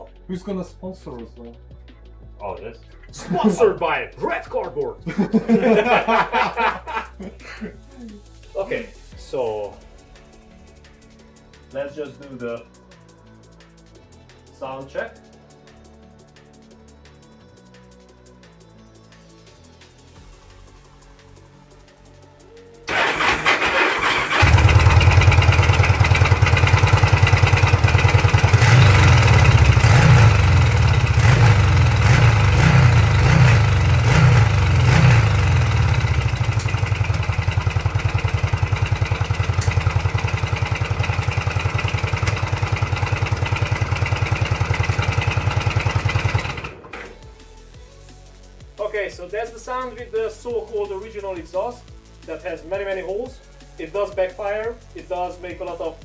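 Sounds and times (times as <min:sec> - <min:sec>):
engine revving: 0:22.9 - 0:47.3
motorcycle engine starting and idling: 0:22.9 - 0:47.6.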